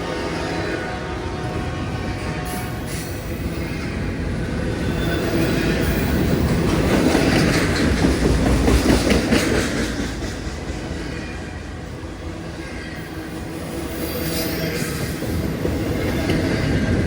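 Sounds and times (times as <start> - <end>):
train wheels clattering on rails: 2.4 - 11.6, 12.8 - 17.0.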